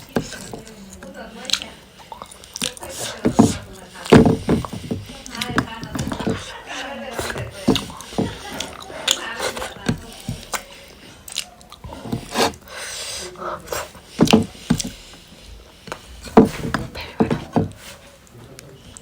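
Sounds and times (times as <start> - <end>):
chewing and biting: 0.0 - 3.2, 10.4 - 12.7.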